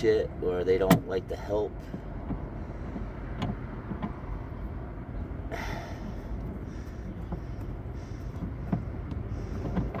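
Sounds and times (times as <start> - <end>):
low outdoor rumble: 0.0 - 10.0
faint breaths: 5.4 - 10.0.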